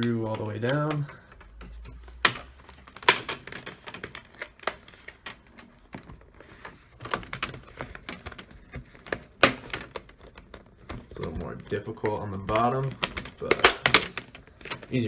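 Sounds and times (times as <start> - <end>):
plastic clips snapping loose: 0.0 - 5.4, 12.4 - 14.9
plastic rustling: 0.0 - 15.0.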